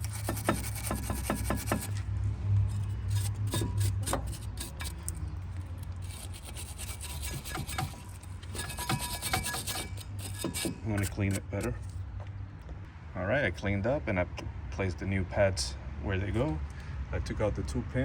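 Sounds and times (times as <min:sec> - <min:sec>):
scraping and rubbing strokes: 0:00.0 - 0:12.0.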